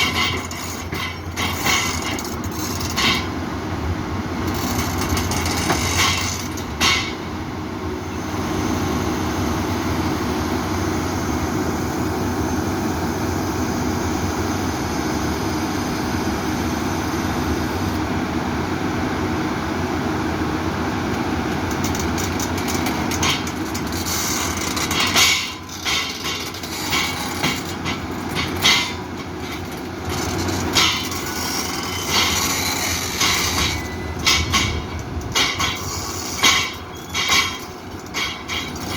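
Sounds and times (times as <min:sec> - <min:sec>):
metal track clanks: 0:00.0 - 0:03.4, 0:04.4 - 0:07.4, 0:21.5 - 0:38.9
excavator diesel engine running: 0:00.0 - 0:38.9.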